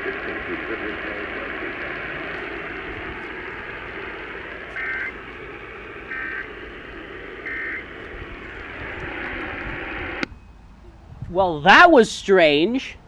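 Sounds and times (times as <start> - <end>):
steady radio hiss: 0.0 - 13.0
two-tone digital warble bursts: 2.9 - 9.0.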